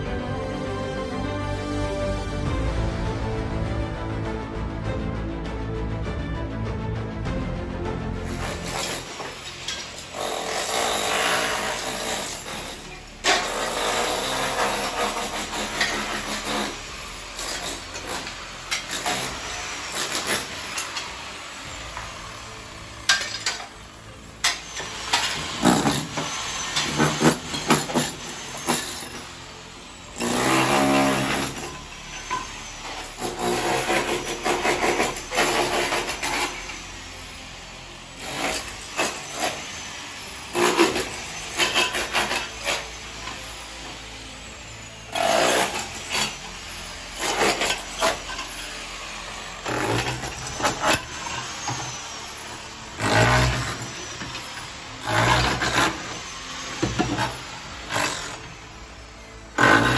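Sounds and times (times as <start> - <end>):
tools knocking and scraping brick: 24.4 - 29.3, 40.6 - 42.9.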